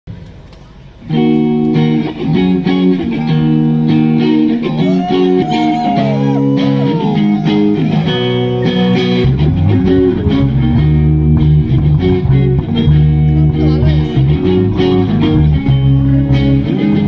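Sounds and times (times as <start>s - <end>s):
guitar with bent notes: 0.3s - 17.0s
low bass part: 6.0s - 17.0s.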